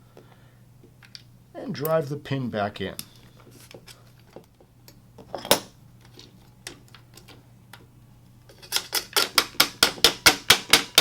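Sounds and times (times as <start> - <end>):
hammer tapping metal punch: 8.8 - 11.0.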